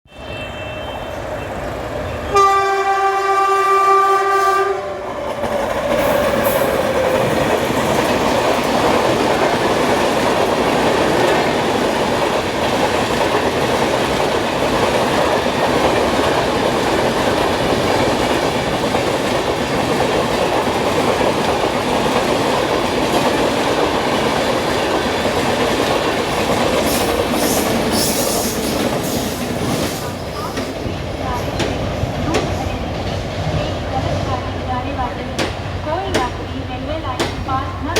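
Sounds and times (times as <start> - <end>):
locomotive horn: 0.1 - 5.2
train rushing past on rails: 0.1 - 37.9.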